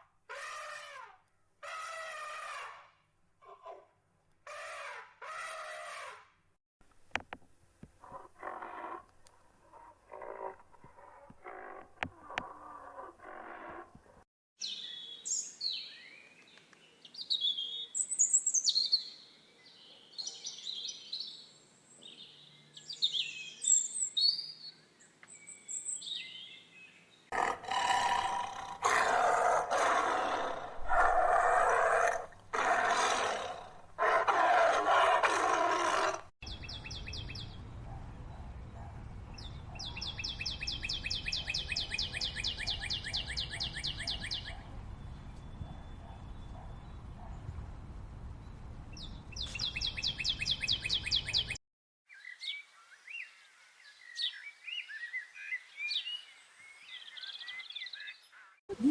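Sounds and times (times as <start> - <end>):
birds chirping: 27.3 - 36.3
drawn-out animal calls: 27.4 - 36.3.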